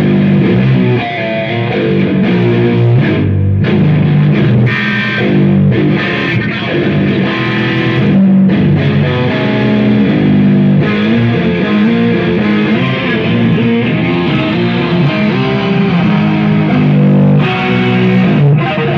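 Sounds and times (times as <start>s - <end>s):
electric guitar notes: 0.0s - 18.9s.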